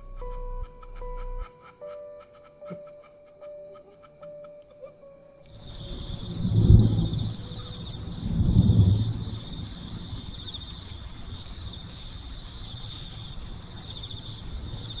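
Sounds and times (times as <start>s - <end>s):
crickets chirring: 5.4s - 15.0s
deep rumble: 5.6s - 10.6s.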